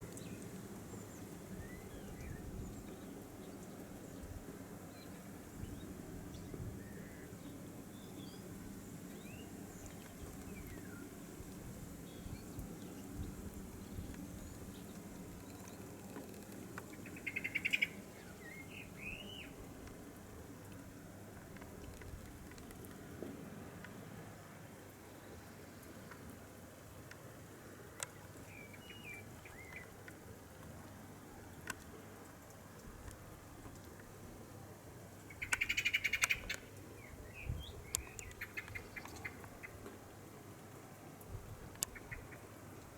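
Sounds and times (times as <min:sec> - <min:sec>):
songbird singing: 0:00.0 - 0:19.8, 0:28.0 - 0:30.2, 0:35.1 - 0:40.1, 0:41.7 - 0:42.9
bird chattering and chirping: 0:35.4 - 0:36.6.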